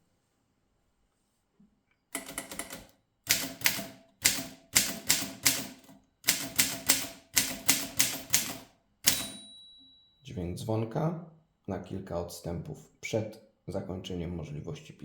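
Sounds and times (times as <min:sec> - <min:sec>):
manual typewriter keystrokes: 0:02.2 - 0:09.4.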